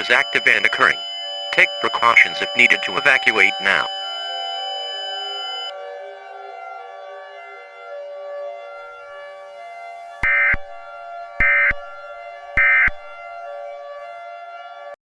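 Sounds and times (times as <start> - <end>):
digital data tone bursts: 0.0 - 5.7
siren-like electronic drone: 0.0 - 5.7.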